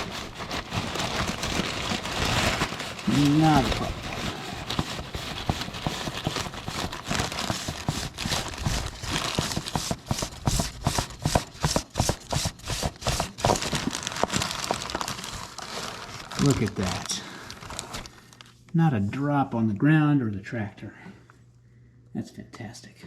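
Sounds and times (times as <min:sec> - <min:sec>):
plastic bag crinkling: 0:00.0 - 0:10.7, 0:12.7 - 0:18.7.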